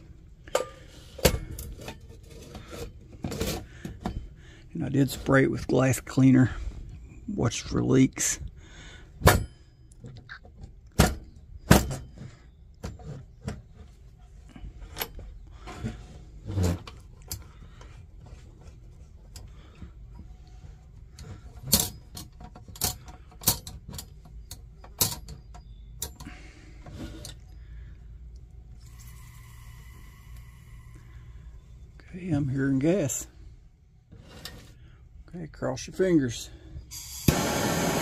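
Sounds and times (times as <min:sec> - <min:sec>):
metallic clicks and knocks: 0:21.2 - 0:26.2.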